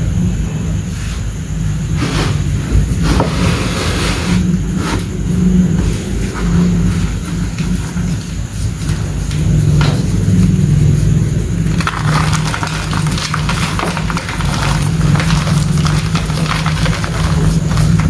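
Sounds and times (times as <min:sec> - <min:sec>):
deep rumble: 0:00.0 - 0:18.0
chalk crunching and crumbling: 0:05.8 - 0:18.0.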